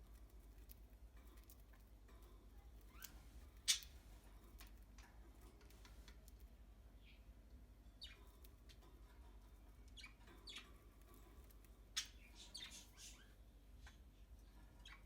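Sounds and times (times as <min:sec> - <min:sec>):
budgerigars chirping: 0:11.9 - 0:13.3.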